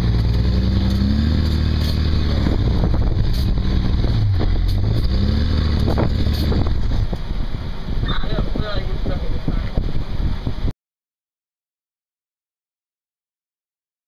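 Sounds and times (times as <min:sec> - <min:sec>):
truck engine revving: 0:00.0 - 0:10.6.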